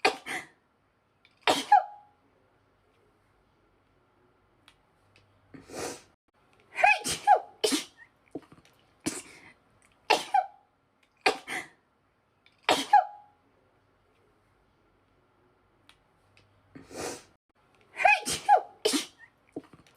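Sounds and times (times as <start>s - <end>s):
woman sneezing: 1.5s - 2.0s, 6.8s - 8.0s, 10.1s - 10.5s, 12.7s - 13.2s, 18.0s - 19.3s.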